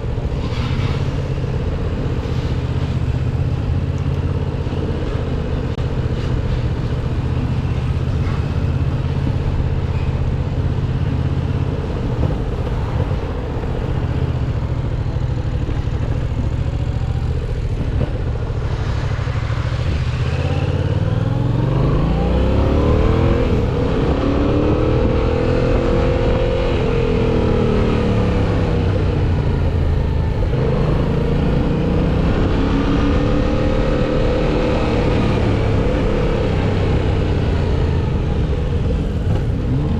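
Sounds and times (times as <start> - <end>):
motorcycle engine revving: 10.8 - 39.9.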